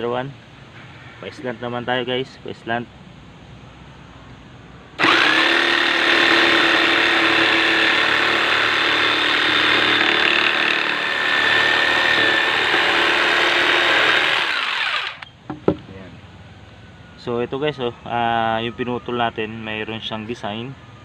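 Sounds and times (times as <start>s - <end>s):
electric jigsaw cutting wood: 5.0s - 15.2s.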